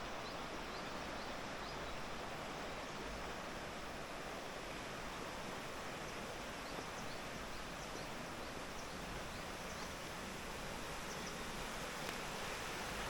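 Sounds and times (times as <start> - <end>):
mountain stream rushing: 0.0 - 13.0.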